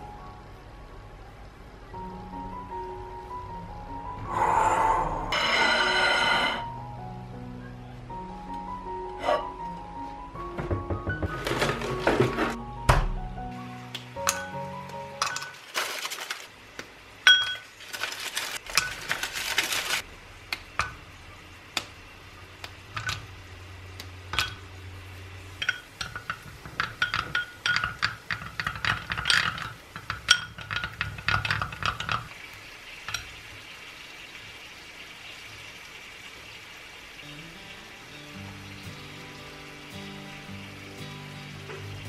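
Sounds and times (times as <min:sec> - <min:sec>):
dishes and utensils clinking: 0:09.2 - 0:09.5, 0:10.6 - 0:12.6, 0:14.2 - 0:14.6, 0:15.2 - 0:15.6, 0:17.3 - 0:19.2, 0:24.3 - 0:24.6, 0:25.6 - 0:32.3.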